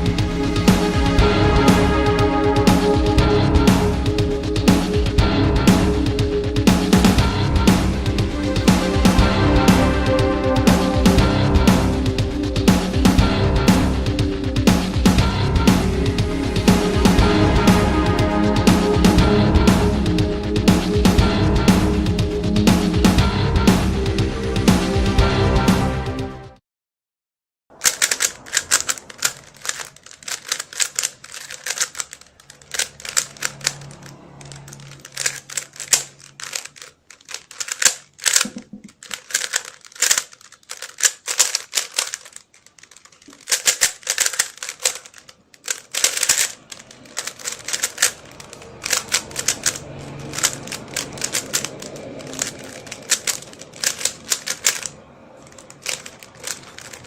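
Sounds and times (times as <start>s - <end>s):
plastic cube clicking: 27.8s - 57.0s.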